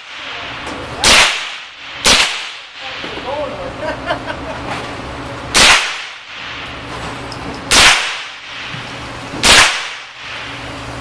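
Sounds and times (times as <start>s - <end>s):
rifle shots: 1.0s - 2.8s, 5.5s - 6.6s, 7.7s - 8.7s, 9.4s - 10.4s.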